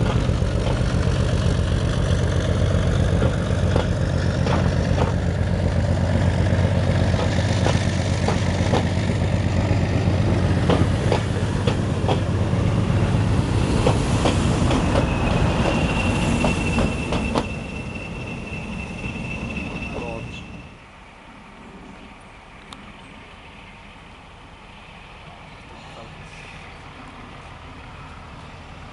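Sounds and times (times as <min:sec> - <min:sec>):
wheels clicking over rail joints: 0:00.0 - 0:12.6, 0:13.7 - 0:15.8
diesel locomotive engine: 0:00.0 - 0:28.9
steady high squeal: 0:14.1 - 0:20.9.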